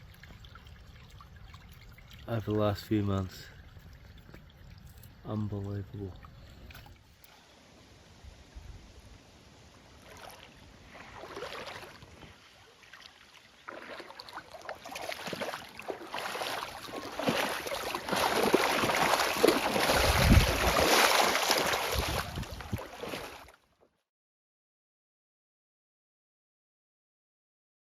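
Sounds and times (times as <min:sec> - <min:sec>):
fish thrashing in shallow water: 0:10.0 - 0:23.6.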